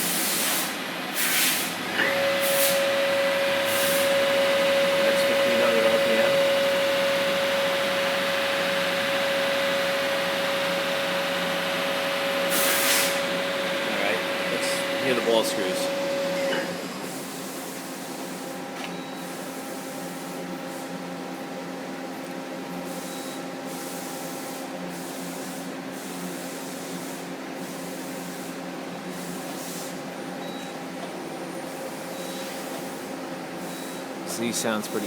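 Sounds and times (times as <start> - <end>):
lathe slides mechanical hum: 0.0 - 18.6.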